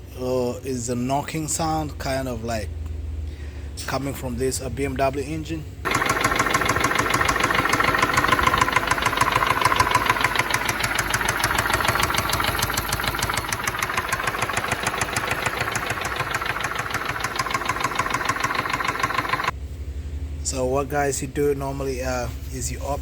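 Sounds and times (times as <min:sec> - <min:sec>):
engine running with fast knocking: 0:05.9 - 0:19.5.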